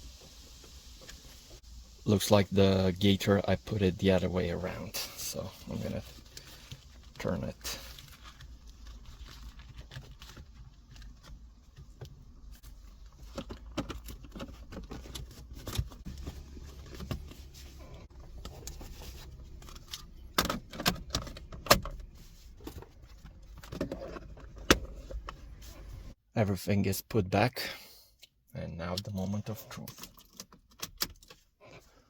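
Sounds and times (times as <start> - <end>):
plastic car trim clicking and rattling: 7.9 - 12.4, 13.0 - 17.4, 18.3 - 25.5, 29.9 - 31.5.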